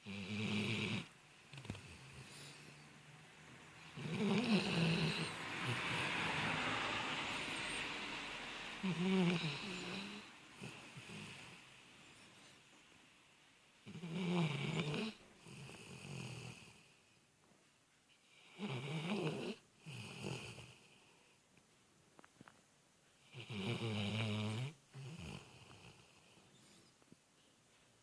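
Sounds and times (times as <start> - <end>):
person snoring: 3.9 - 7.7, 8.8 - 11.6, 13.9 - 16.8, 23.3 - 26.1.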